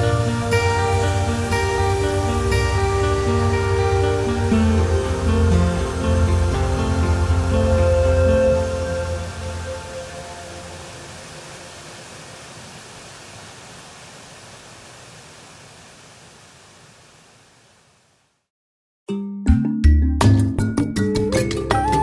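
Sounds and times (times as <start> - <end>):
music: 0.0 - 11.1, 19.1 - 22.0
rushing water: 0.0 - 18.2.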